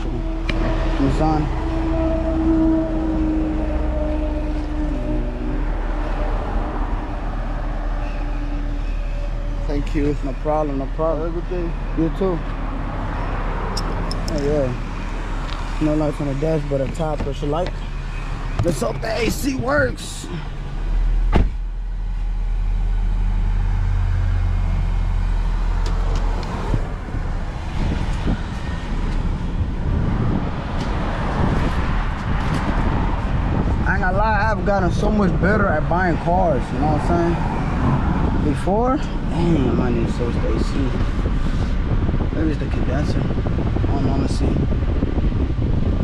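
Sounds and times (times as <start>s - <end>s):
car engine drone inside cabin: 0.0s - 33.9s.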